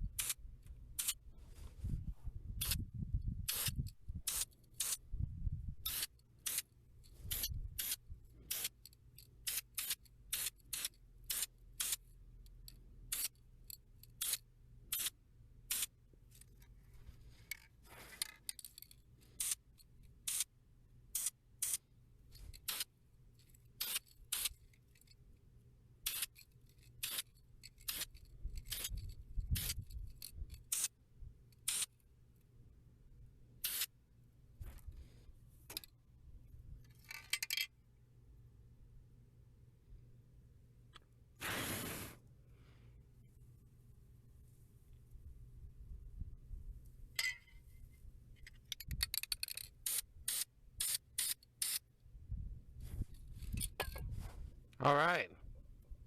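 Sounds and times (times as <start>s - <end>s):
brief hiss: 41.4s - 42.2s.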